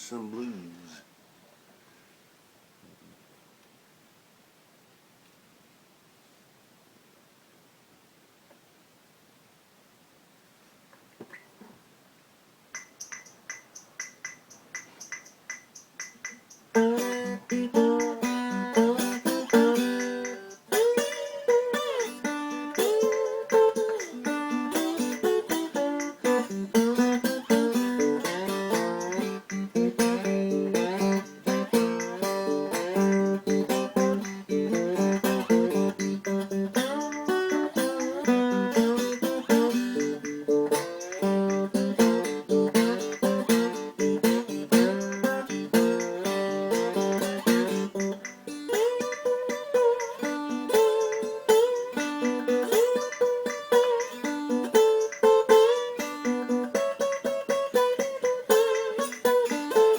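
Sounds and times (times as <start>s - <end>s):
bluesy acoustic guitar plucking: 12.7s - 59.9s.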